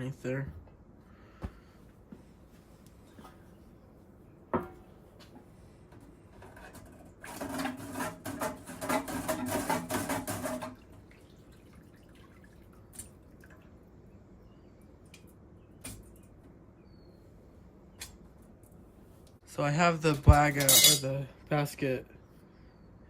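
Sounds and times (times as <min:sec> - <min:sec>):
water splashing and dripping: 0:10.7 - 0:13.9
metal parts clattering: 0:20.6 - 0:21.0.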